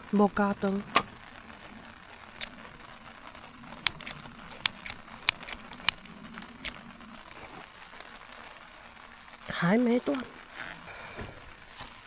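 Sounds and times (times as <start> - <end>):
food grilling over fire: 0.0 - 12.0
fat popping and spitting: 2.2 - 8.2.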